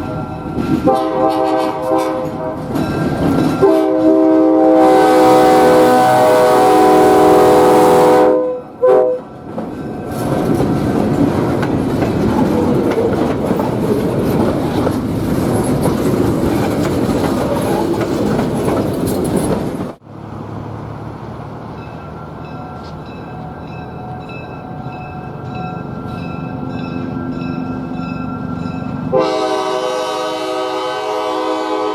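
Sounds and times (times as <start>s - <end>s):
train wheels rolling and clattering: 0.0s - 4.2s, 9.2s - 29.7s
locomotive rumble: 0.0s - 31.9s
train horn chord: 0.8s - 2.9s, 3.6s - 9.3s, 29.1s - 31.9s.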